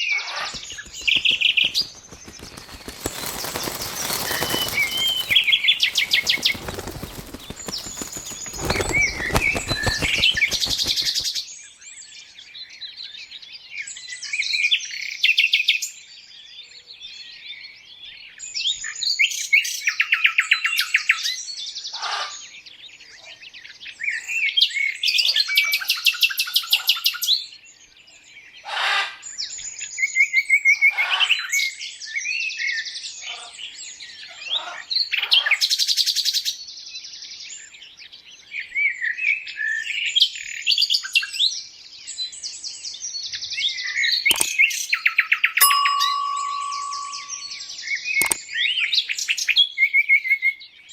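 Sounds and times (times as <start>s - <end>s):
birds chirping and singing: 0.5s - 11.3s
rustling noise: 0.5s - 11.3s.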